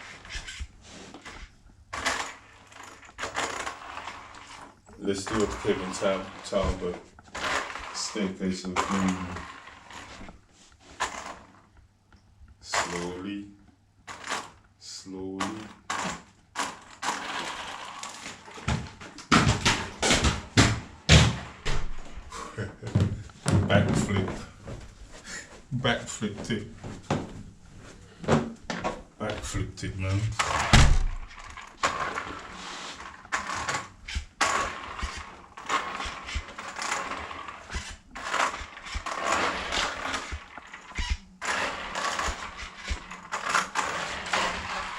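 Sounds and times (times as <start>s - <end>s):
wheels and chassis rattling: 0.0s - 11.8s, 14.1s - 14.7s, 15.4s - 22.6s, 28.8s - 44.9s
toy quad bike motor whirring: 2.0s - 10.3s, 11.0s - 11.6s, 14.1s - 14.6s, 15.4s - 18.6s, 30.4s - 44.9s.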